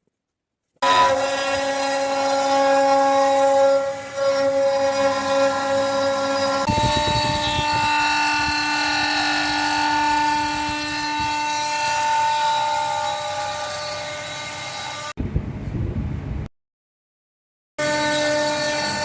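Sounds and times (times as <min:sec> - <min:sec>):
router spindle whine: 0:00.8 - 0:15.2, 0:17.8 - 0:19.0
low rumbling noise: 0:15.2 - 0:16.5.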